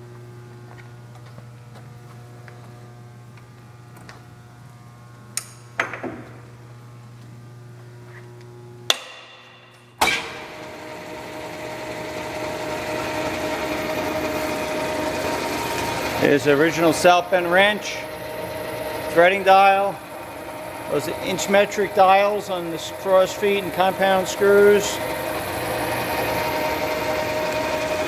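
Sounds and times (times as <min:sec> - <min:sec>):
motor starting with a clunk: 0:05.4 - 0:06.5, 0:08.9 - 0:28.0
lathe motor humming: 0:10.0 - 0:28.0.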